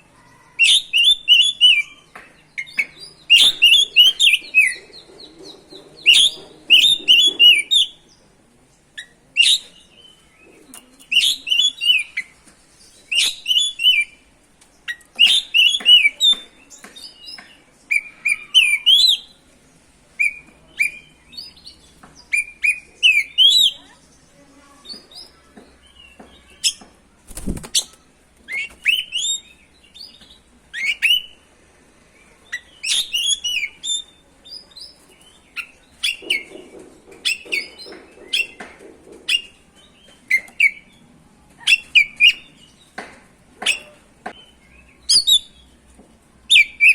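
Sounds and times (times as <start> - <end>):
bird singing chirps and whistles: 15.2 - 16.4.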